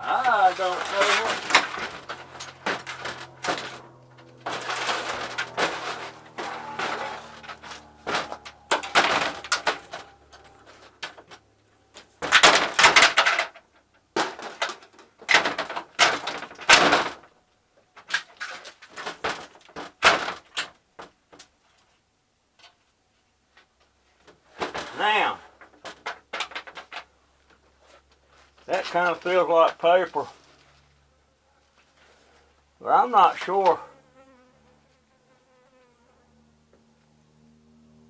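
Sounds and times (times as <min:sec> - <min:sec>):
knocks clatters and scraping: 0:00.0 - 0:21.9, 0:23.6 - 0:30.9.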